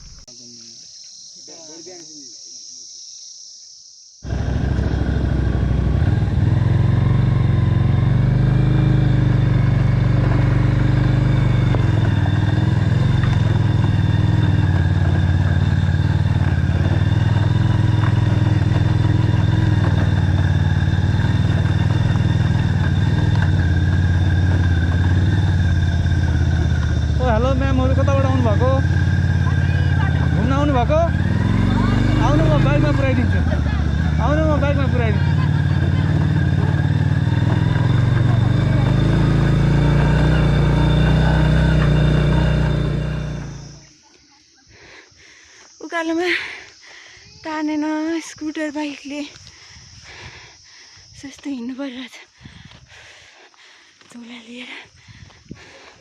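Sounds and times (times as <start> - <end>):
faint high insect drone: 0.0 - 56.0
motorcycle engine running: 4.2 - 44.0.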